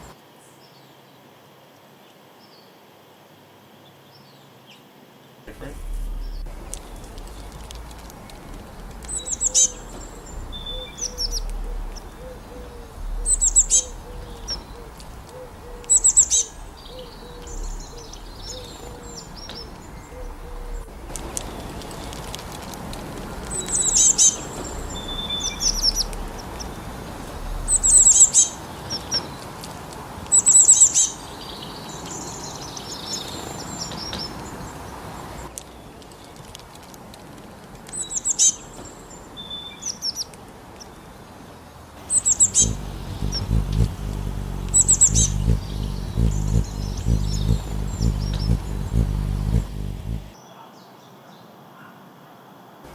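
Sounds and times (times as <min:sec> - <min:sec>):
steady hiss: 0:05.5 - 0:10.6, 0:42.0 - 0:50.4
soft bird chirps: 0:05.5 - 0:22.2, 0:23.5 - 0:29.1, 0:42.0 - 0:50.4
songbirds singing: 0:05.5 - 0:29.6, 0:42.0 - 0:50.4
lower short bird note: 0:42.0 - 0:50.4.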